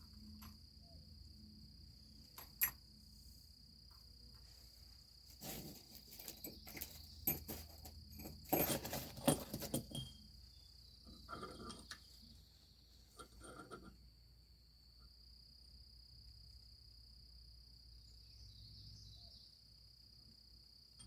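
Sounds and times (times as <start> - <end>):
metal tools clinking and scraping: 5.4 - 10.4, 11.1 - 12.1, 13.2 - 13.9.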